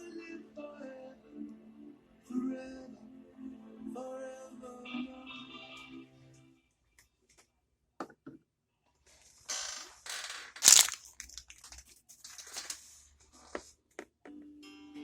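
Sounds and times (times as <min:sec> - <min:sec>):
sharp crackle of packaging: 0:09.9 - 0:12.8
toy packaging crinkling: 0:09.9 - 0:12.9.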